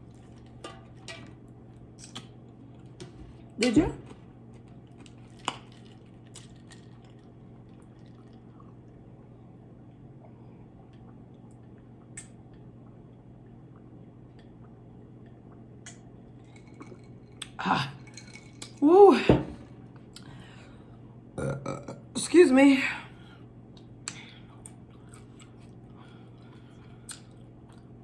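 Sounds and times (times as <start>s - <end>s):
steady low hum: 0.0s - 28.0s
wet eating mouth sounds: 2.0s - 2.8s, 24.0s - 27.9s.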